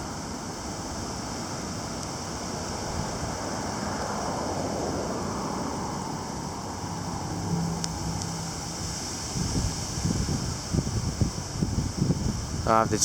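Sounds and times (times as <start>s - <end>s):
gusty wind: 0.0s - 13.0s
heavy rain falling: 6.5s - 13.0s.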